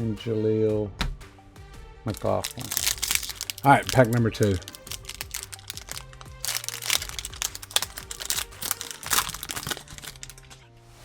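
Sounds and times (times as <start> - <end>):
card pack wrapper tearing: 2.1 - 10.5.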